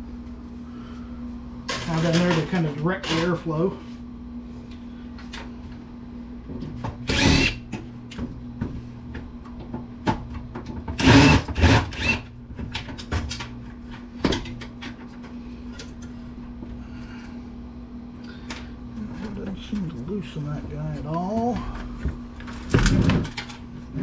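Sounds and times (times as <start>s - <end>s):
power drill running: 7.0s - 7.7s, 11.0s - 12.3s.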